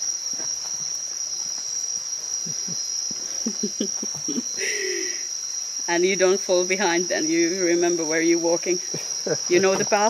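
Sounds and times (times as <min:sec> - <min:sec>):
insects and crickets chirping: 0:00.0 - 0:10.0.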